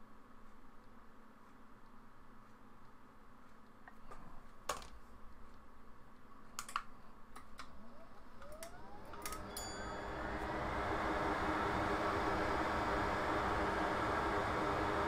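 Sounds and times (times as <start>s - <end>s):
rising whine: 7.8s - 15.0s.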